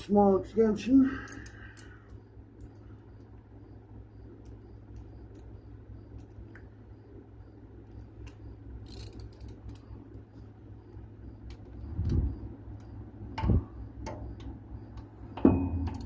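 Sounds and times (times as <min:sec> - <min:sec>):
steady low hum: 0:00.0 - 0:16.0
metal clicks of socket handling: 0:01.3 - 0:02.8
ratchet wrench clicking: 0:08.8 - 0:09.9.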